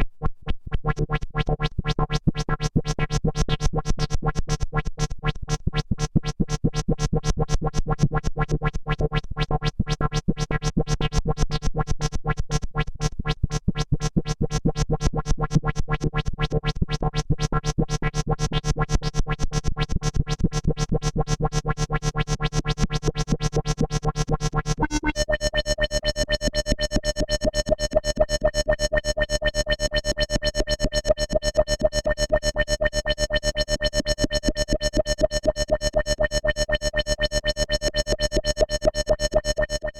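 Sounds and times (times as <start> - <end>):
buzzy synthesizer pulsing: 30.5 - 39.9.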